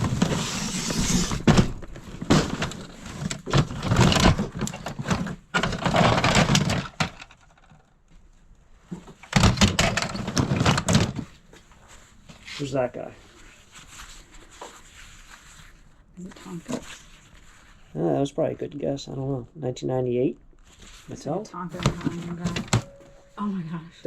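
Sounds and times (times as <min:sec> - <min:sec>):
hands rummaging through toys: 0:00.0 - 0:07.9, 0:09.0 - 0:11.4, 0:21.7 - 0:23.4.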